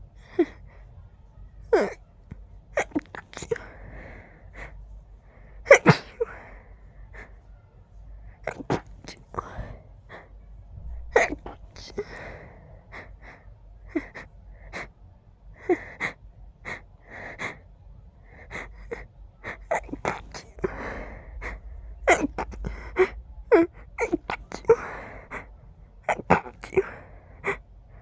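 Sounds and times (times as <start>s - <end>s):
muffled sneezes: 2.7s - 3.8s, 5.6s - 6.5s, 8.4s - 9.8s, 10.8s - 12.2s, 18.5s - 27.6s
quick catching breaths: 18.4s - 28.0s.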